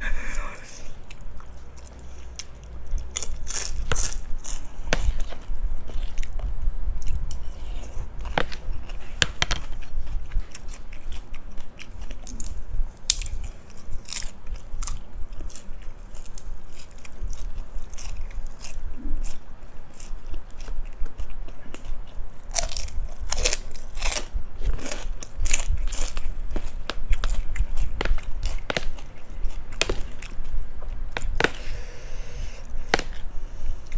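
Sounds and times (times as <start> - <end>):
crunchy chewing: 0.1 - 33.9.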